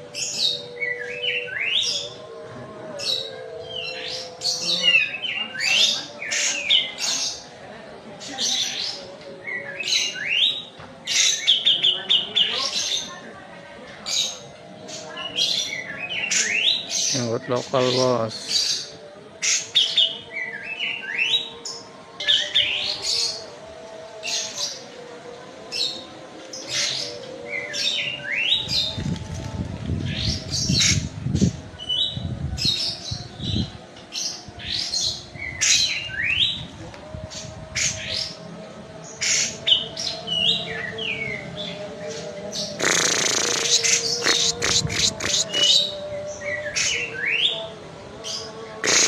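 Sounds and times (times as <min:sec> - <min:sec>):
bird chirping and whistling: 0:42.8 - 0:45.9.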